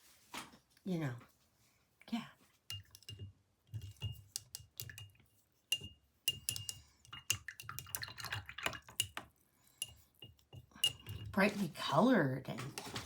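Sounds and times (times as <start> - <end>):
paintbrush tapping paint container: 5.8 - 9.3.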